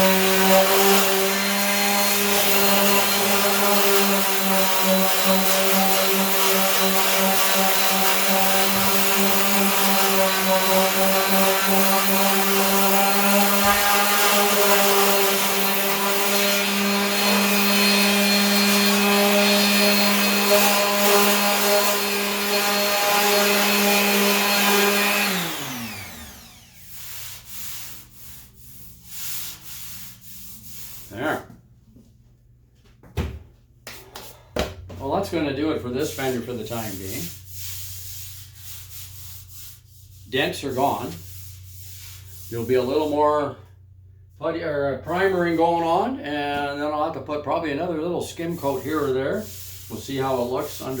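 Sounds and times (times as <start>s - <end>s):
power sander running: 0.0s - 26.9s.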